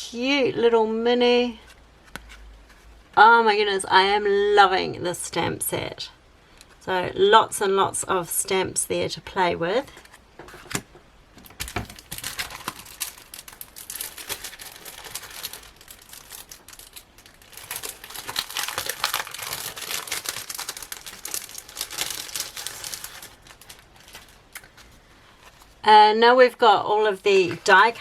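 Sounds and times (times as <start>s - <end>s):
packaging crinkling: 11.4s - 25.8s.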